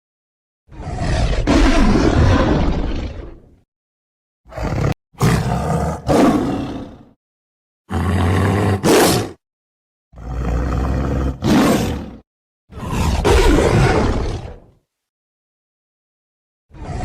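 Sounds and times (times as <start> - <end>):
tiger roaring: 0.7 - 3.6, 4.5 - 7.2, 7.9 - 9.4, 10.2 - 14.7, 16.7 - 17.0.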